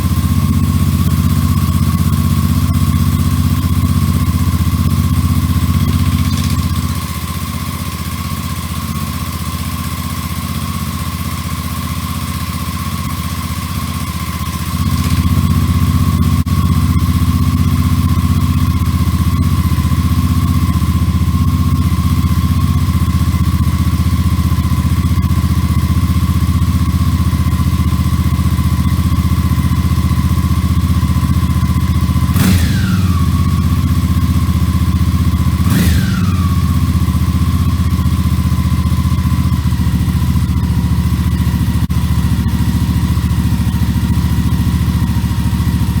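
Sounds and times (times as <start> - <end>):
motorcycle engine idling and revving: 0.0 - 46.0.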